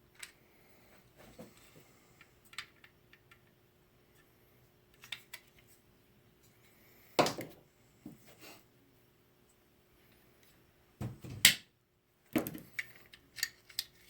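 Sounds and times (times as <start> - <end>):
clicks of small parts handled: 0.1 - 0.4, 4.9 - 5.6, 12.3 - 14.0.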